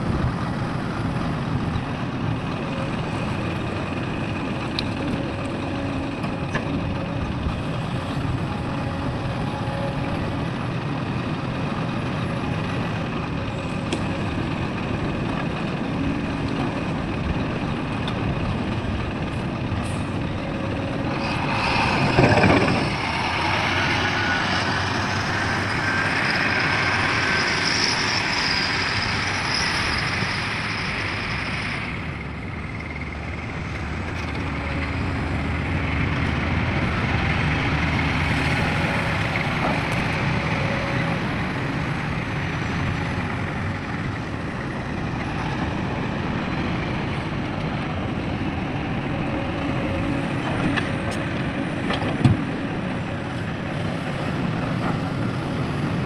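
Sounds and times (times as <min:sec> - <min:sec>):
heavy diesel machinery running: 0:00.0 - 0:56.0
high whine: 0:20.0 - 0:46.0.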